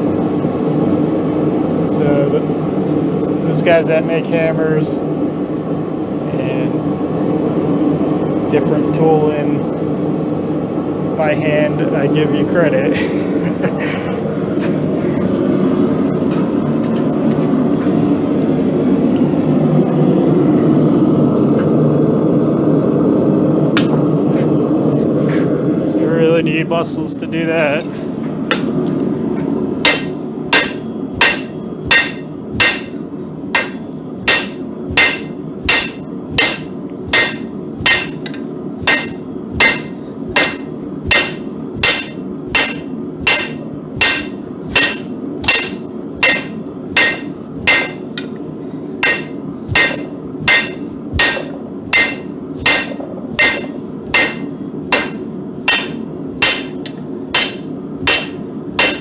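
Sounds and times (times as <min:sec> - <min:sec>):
steady low hum: 0:00.0 - 0:59.0
hammer ringing on steel: 0:29.9 - 0:48.3, 0:49.0 - 0:59.0.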